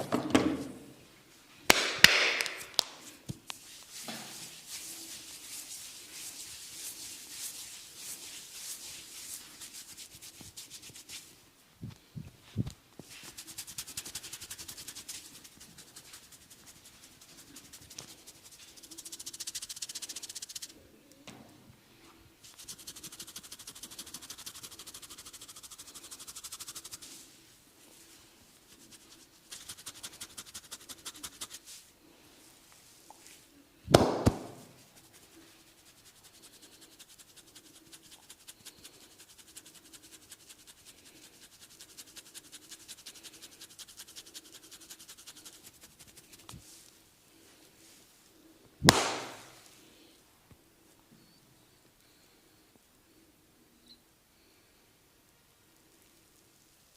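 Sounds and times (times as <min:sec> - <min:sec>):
loud sharp snap: 0:01.7 - 0:03.0, 0:33.9 - 0:34.6, 0:48.8 - 0:49.7
rubbing and scratching on scalp: 0:02.5 - 0:11.4, 0:13.0 - 0:20.8, 0:22.4 - 0:31.9, 0:34.7 - 0:48.0.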